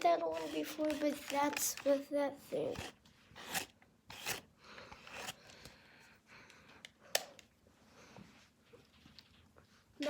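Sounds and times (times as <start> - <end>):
barber tool scraping: 0.0 - 1.9, 2.6 - 5.4.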